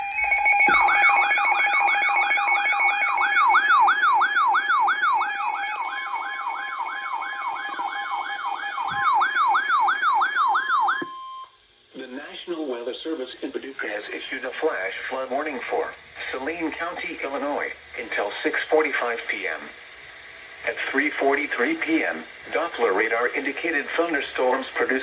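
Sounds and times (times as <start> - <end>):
emergency siren wailing: 0.0 - 11.2.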